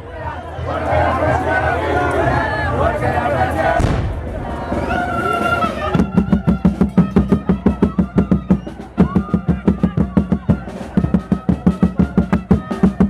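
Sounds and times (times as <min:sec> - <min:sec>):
quick steady drumbeat: 0:03.7 - 0:13.0.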